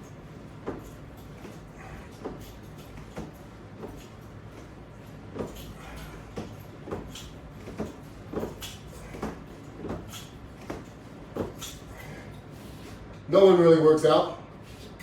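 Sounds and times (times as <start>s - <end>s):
exercise gear knocks and clacks: 0.6s - 12.4s.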